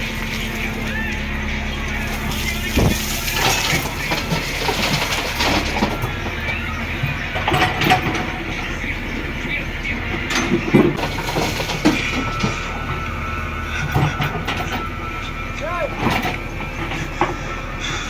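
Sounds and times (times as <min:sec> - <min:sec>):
diesel engine running: 0:00.0 - 0:18.0
machine clanks and thuds: 0:02.0 - 0:08.6, 0:10.1 - 0:15.1, 0:15.8 - 0:17.5.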